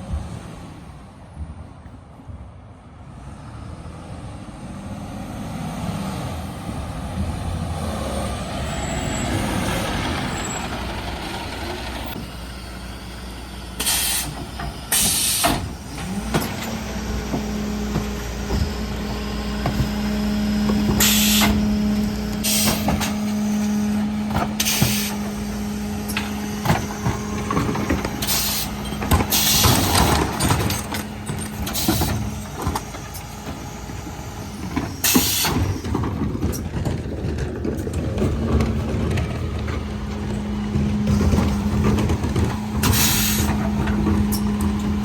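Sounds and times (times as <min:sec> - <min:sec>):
truck engine and hydraulics hum: 0:00.0 - 0:45.0
air hiss bursts: 0:13.8 - 0:15.7, 0:21.0 - 0:21.6, 0:28.2 - 0:30.0, 0:42.9 - 0:43.5
bin lift knocks and clatter: 0:26.1 - 0:33.6.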